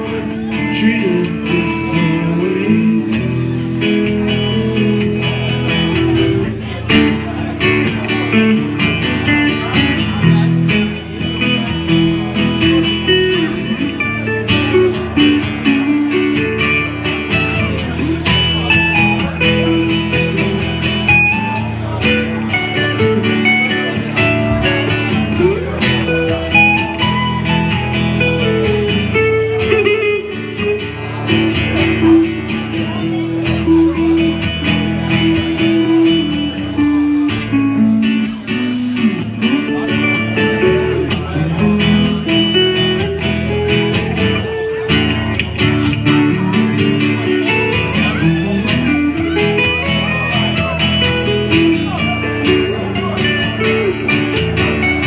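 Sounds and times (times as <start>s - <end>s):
person singing: 0.0s - 3.6s
acoustic guitar strummed and picked: 0.0s - 55.0s.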